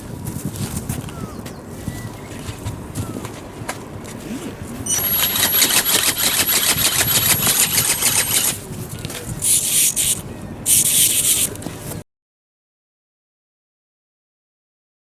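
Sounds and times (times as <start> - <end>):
motor whine: 4.9 - 8.6
wings fluttering: 4.9 - 8.7
hiss bursts: 9.4 - 11.5.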